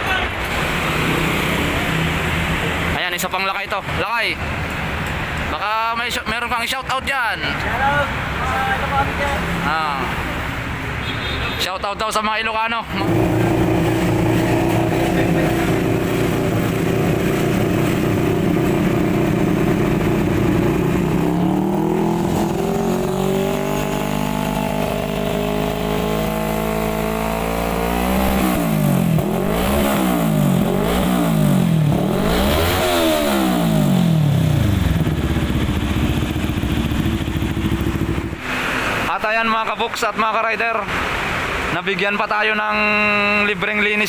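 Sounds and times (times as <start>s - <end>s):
motorcycle engine idling and revving: 0.4s - 3.0s, 12.9s - 39.1s.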